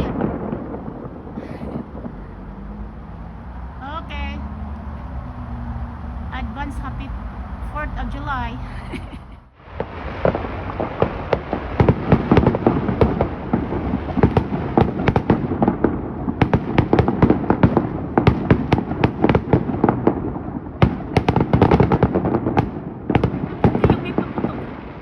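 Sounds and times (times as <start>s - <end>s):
fireworks bangs and pops: 0.0s - 2.7s, 9.6s - 25.0s
steady fireworks rumble: 0.0s - 25.0s.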